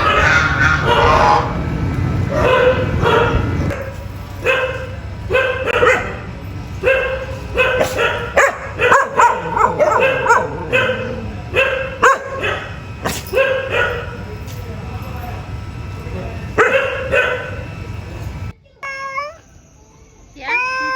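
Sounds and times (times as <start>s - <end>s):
dog barking and yipping: 0.0s - 1.6s, 2.3s - 14.2s, 16.6s - 17.7s.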